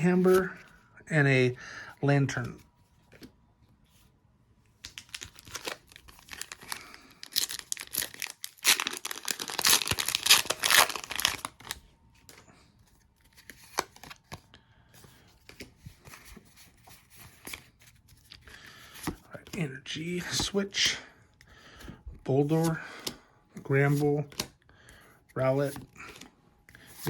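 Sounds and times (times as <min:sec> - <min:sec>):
foil wrapper tearing and crinkling: 0:04.9 - 0:11.8.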